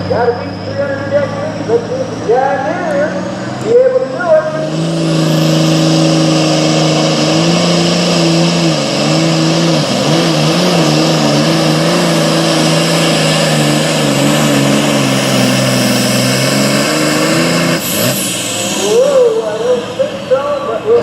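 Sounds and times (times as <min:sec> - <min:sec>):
diesel tractor engine under load: 0:00.0 - 0:21.0.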